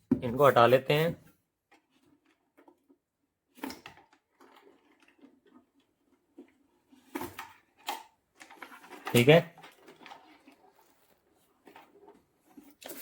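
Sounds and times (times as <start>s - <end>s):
faint clicks and handling: 3.6s - 13.0s.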